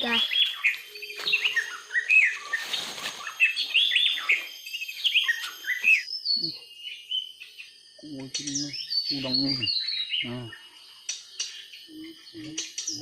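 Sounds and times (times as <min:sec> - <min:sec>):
songbirds chirping: 0:00.0 - 0:13.0.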